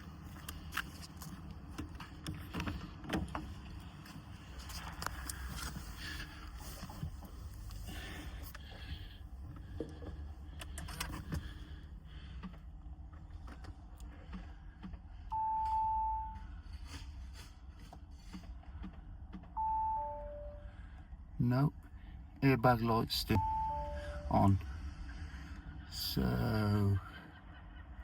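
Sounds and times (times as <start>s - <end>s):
steady warning tone: 15.3s - 16.6s, 19.6s - 21.8s, 22.4s - 27.1s.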